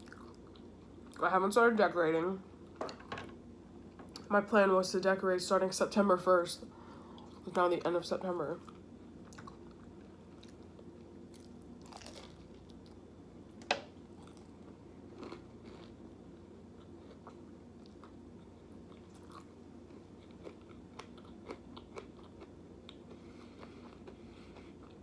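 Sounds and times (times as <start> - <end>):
person chewing and biting: 11.3 - 13.0, 14.2 - 16.0, 16.8 - 25.0.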